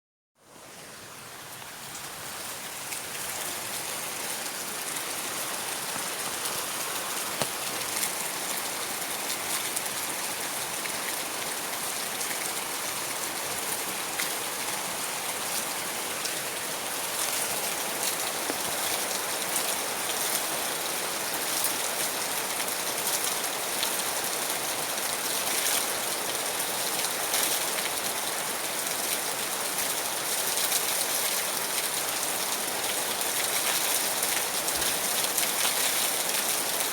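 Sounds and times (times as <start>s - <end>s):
steady rain hiss: 0.4s - 36.9s
raindrop taps: 7.4s - 8.1s.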